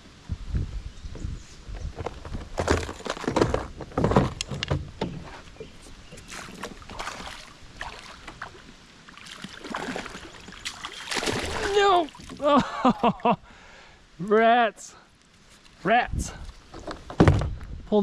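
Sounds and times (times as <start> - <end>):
water splashing around kayak: 5.6 - 12.6.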